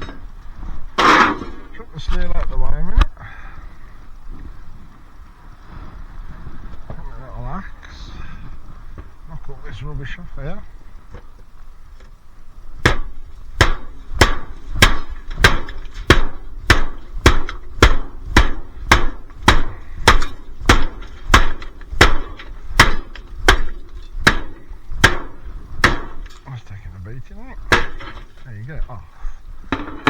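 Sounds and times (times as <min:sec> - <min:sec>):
small axe striking: 0:12.8 - 0:26.4, 0:27.7 - 0:28.3.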